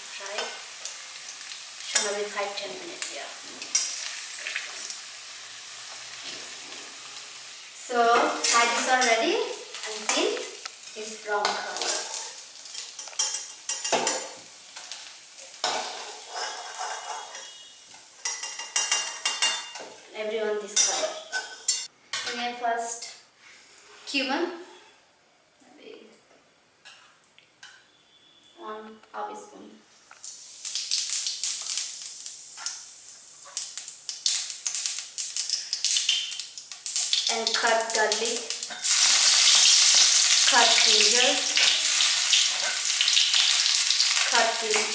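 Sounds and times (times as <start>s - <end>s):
food frying in hot oil: 0.0s - 19.8s, 30.2s - 44.9s
metal spoon scraping a pan: 10.9s - 14.9s, 15.6s - 19.9s, 20.7s - 21.9s, 38.7s - 44.9s
crackles and pops: 30.1s - 38.8s.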